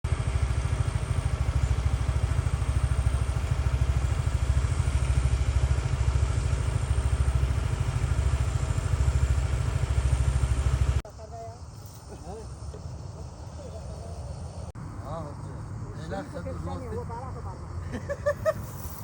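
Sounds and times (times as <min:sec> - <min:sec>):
small engine running: 0:00.0 - 0:11.0.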